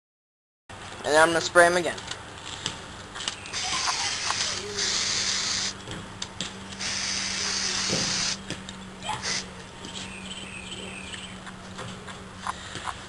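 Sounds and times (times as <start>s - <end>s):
aerosol can spraying: 3.6s - 5.8s, 6.8s - 8.4s.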